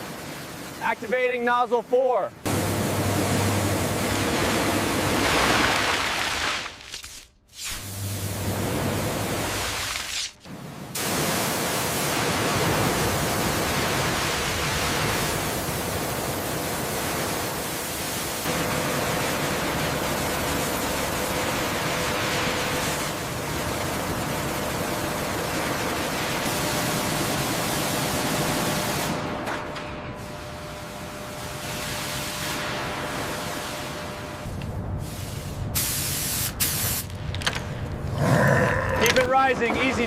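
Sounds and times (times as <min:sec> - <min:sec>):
water spray hissing from hose: 0:07.6 - 0:10.4, 0:11.0 - 0:18.5.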